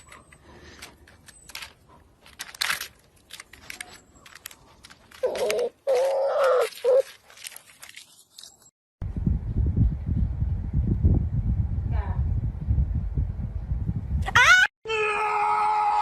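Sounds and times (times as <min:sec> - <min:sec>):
light clicks and rustling: 0:00.0 - 0:08.7.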